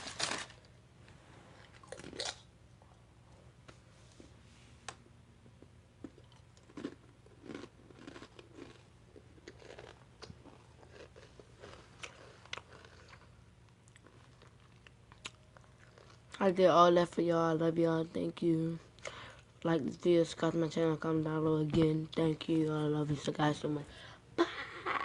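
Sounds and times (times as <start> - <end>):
person chewing food: 1.6 - 3.4, 5.4 - 16.4.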